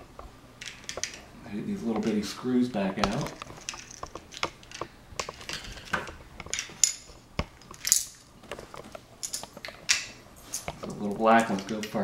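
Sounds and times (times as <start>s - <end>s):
small screws clinking: 0.6s - 1.2s, 3.0s - 8.3s, 9.2s - 12.0s.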